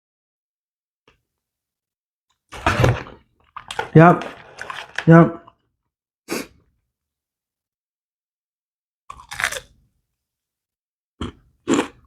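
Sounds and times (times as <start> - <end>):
crunchy chewing: 9.1 - 9.7.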